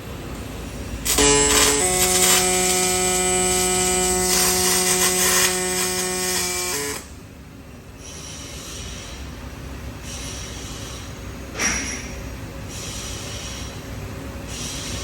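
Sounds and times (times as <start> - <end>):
welding torch buzzing and hissing: 1.0 - 7.1.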